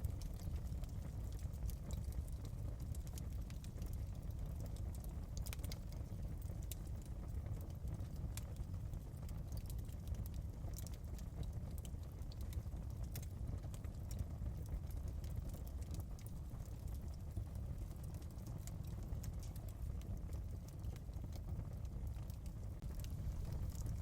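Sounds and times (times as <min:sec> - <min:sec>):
wood fire crackling: 0:00.0 - 0:24.0.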